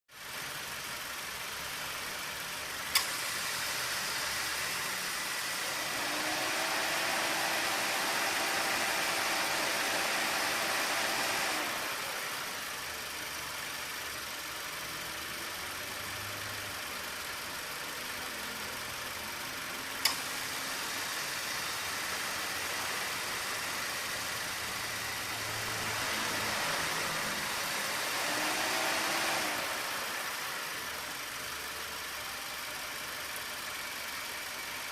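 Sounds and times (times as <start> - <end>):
car engine idling: 0.2 - 34.9
compressor clutch clicking: 2.8 - 3.4.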